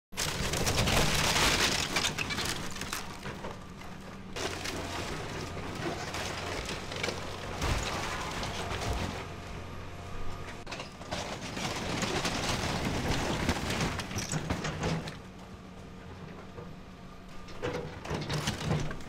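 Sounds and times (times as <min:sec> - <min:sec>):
timber cracking and splintering: 0:00.1 - 0:09.3
bulldozer engine hum: 0:00.2 - 0:19.0.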